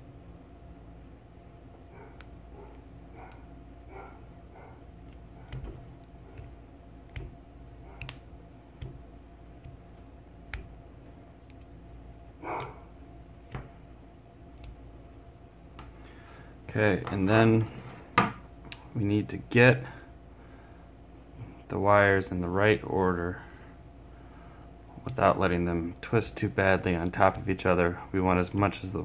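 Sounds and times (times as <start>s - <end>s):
copper wires clicking and rustling: 2.0s - 15.1s, 24.9s - 29.0s.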